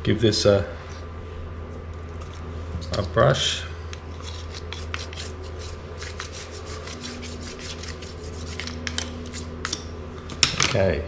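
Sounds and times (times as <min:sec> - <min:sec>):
brush scrubbing plastic: 0:04.2 - 0:09.8.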